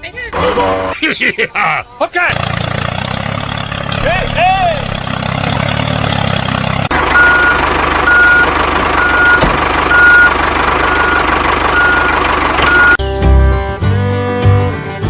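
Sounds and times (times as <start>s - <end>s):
truck engine running: 2.2s - 14.8s
reversing alarm beeping: 7.1s - 13.0s
music: 13.0s - 15.0s.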